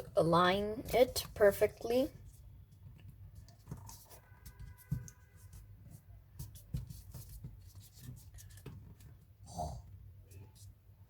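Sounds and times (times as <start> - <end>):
paper crinkling and rubbing: 3.3 - 9.3.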